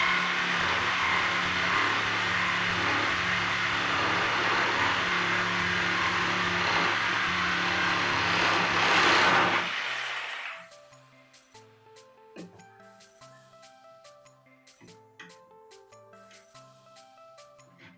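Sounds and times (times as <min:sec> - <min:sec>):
jigsaw cutting wood: 0:00.0 - 0:10.6.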